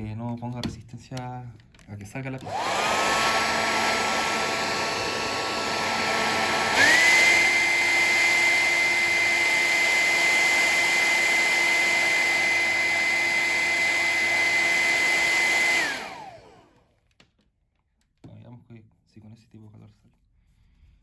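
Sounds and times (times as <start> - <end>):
hair dryer blowing: 2.4 - 16.8.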